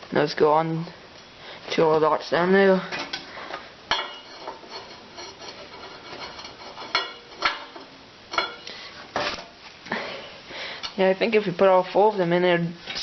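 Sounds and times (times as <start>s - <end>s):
metal spacers clanking on frame: 3.9s - 8.7s
metal rubbing: 3.9s - 9.5s.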